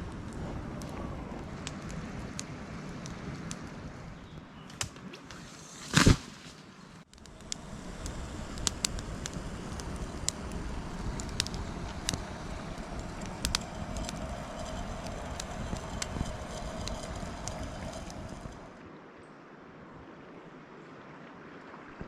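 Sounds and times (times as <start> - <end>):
sharp crackles and clicks: 0.0 - 6.3, 7.1 - 18.8
outdoor background noise: 0.0 - 22.0
even hiss: 7.2 - 18.7.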